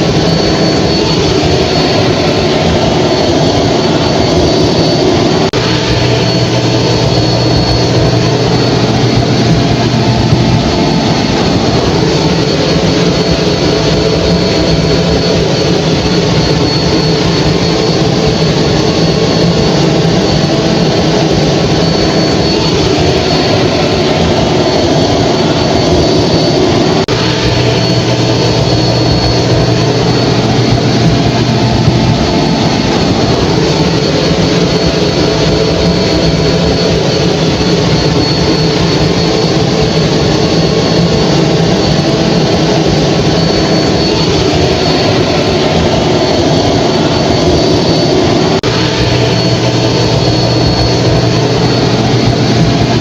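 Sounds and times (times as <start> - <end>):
hair dryer running: 0.0 - 18.1.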